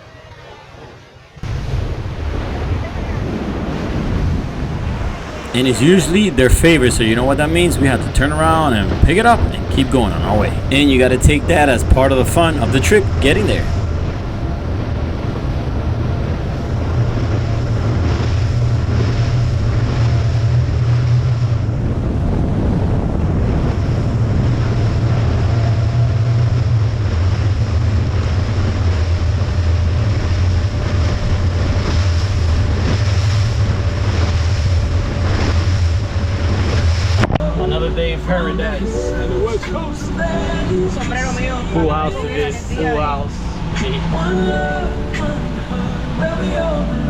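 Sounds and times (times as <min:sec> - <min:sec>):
water rushing past hull: 0:00.0 - 0:47.0
motorboat engine drone: 0:00.6 - 0:47.0
wind buffeting microphone: 0:01.4 - 0:37.5.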